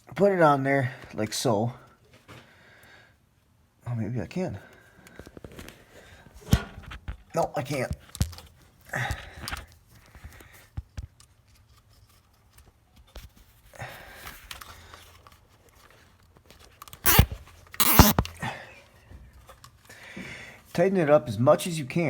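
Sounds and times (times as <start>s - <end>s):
zip tie ratcheting rasps: 17.0s - 18.3s.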